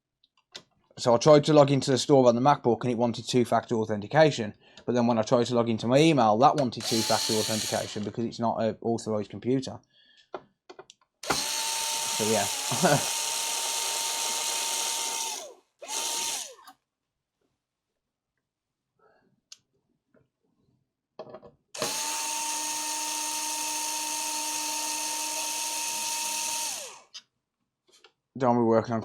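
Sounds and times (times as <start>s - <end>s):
small electric motor tool whining: 6.8s - 8.1s, 11.2s - 16.7s, 21.8s - 27.2s.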